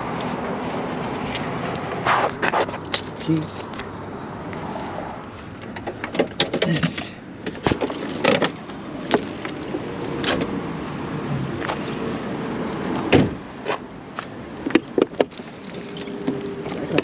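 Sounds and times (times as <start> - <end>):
car door clicks and knocks: 5.6 - 9.3, 13.0 - 13.8, 14.6 - 15.4.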